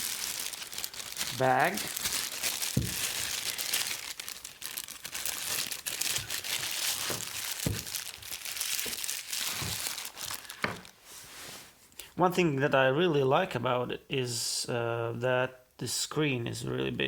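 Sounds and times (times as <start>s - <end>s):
plastic bag crinkling: 0.0s - 11.0s.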